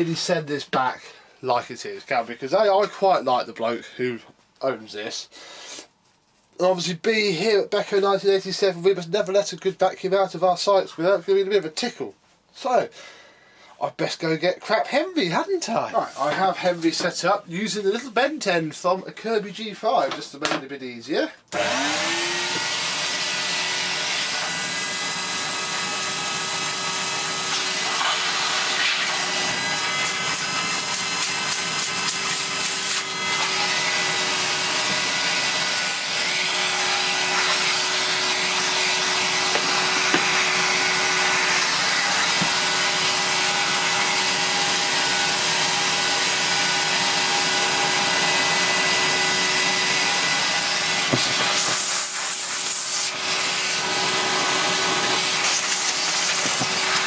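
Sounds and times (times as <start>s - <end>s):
vacuum cleaner motor whine: 21.5s - 57.0s
rushing air through nozzle: 51.5s - 53.2s.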